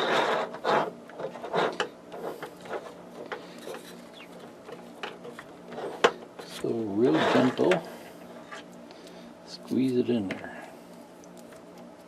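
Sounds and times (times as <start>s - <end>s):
wires rubbing and scraping: 0.0s - 8.8s.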